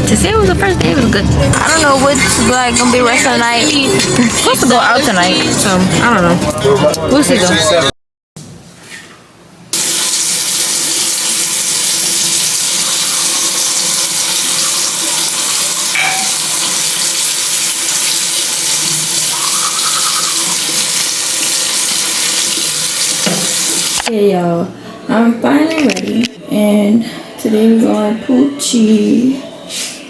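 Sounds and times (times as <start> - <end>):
running water rushing: 9.8 - 24.0.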